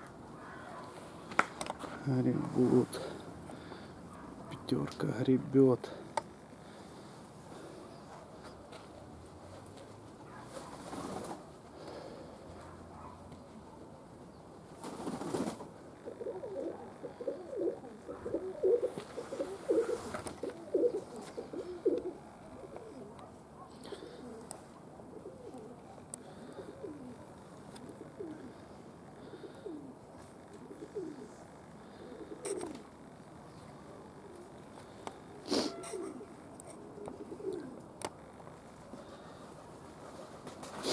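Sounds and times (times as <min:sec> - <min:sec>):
pigeons cooing: 0:15.1 - 0:40.9.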